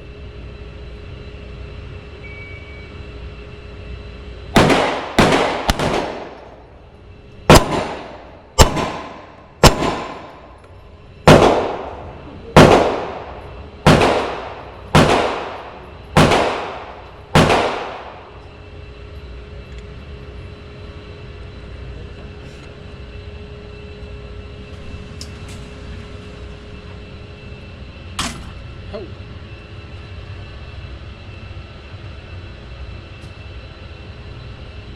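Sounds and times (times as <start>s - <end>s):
steady background hum: 0.0s - 34.9s
pistol shots: 4.6s - 6.5s, 7.5s - 10.4s, 11.3s - 18.3s.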